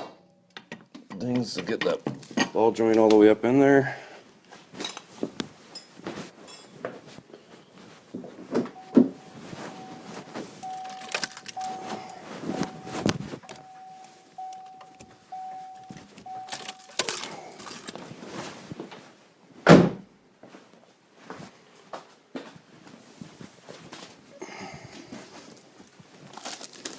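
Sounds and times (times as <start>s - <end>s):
steel tools clinking on metal: 5.7s - 6.8s, 10.6s - 18.0s
steady high tone: 8.8s - 17.6s.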